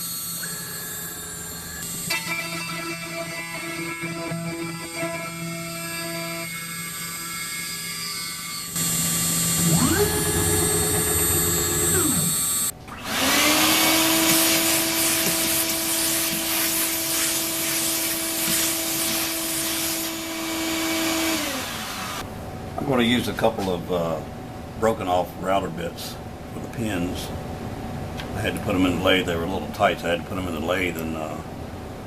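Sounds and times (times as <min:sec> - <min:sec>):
router spindle whine: 0:00.0 - 0:22.2.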